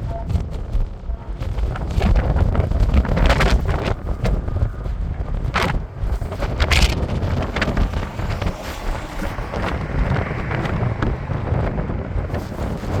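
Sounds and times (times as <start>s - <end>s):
wind buffeting microphone: 0.0s - 13.0s.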